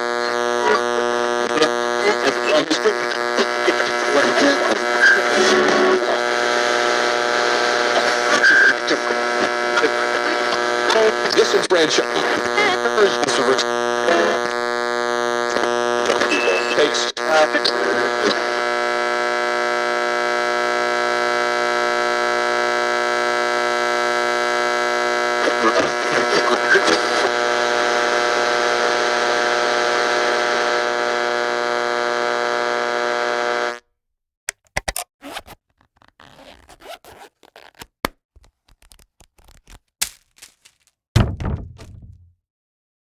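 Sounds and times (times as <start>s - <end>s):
sharp clicks and knocks: 39.2s - 42.3s
heavy thunk: 41.2s - 42.4s.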